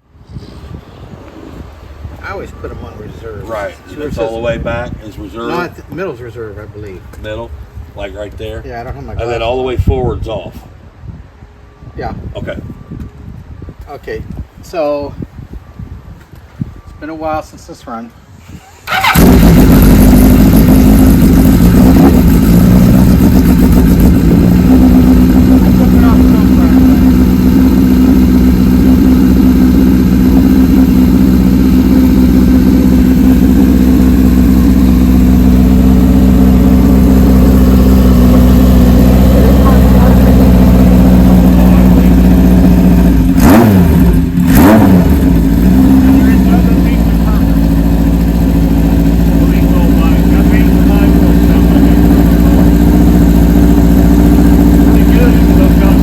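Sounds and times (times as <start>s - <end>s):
motorcycle engine running: 18.9s - 56.0s.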